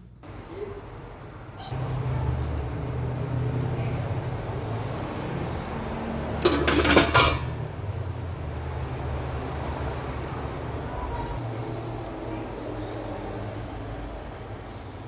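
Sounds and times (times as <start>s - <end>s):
metal cookware clattering: 6.3s - 7.7s.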